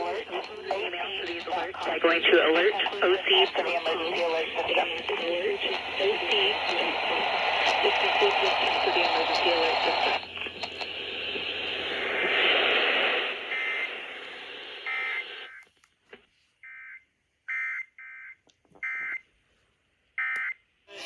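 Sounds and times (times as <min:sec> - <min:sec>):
radio static hiss: 0:00.0 - 0:15.5.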